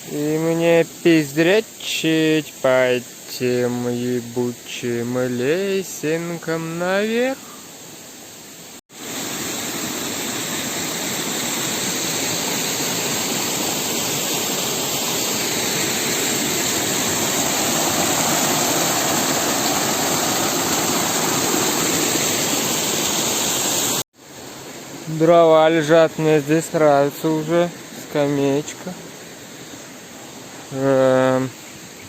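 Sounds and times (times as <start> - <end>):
waterfall rushing: 8.9 - 32.0.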